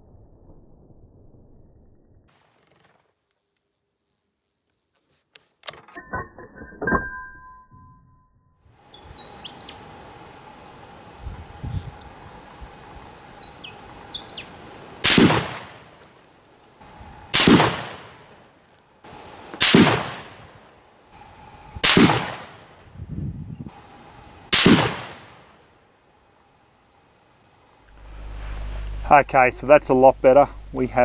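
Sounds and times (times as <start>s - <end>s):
faint bird chirps: 8.9s - 15.0s
rifle shots: 15.0s - 16.1s, 16.8s - 20.7s, 21.8s - 22.8s, 24.5s - 25.7s.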